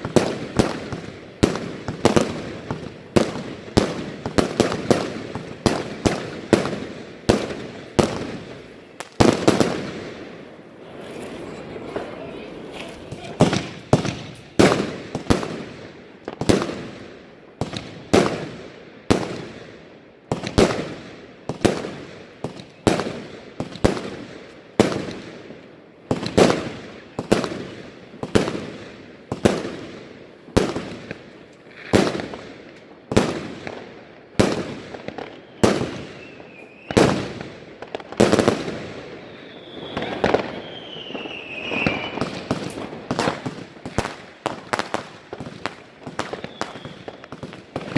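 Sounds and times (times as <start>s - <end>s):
firework bangs with echoing crackle: 0.0s - 47.9s
wavering firework whistle: 35.3s - 37.2s, 39.0s - 42.7s, 46.2s - 47.5s.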